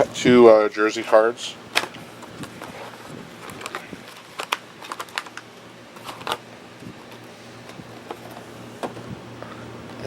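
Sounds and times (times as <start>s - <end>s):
trading card box clicks and crackles: 1.7s - 6.4s.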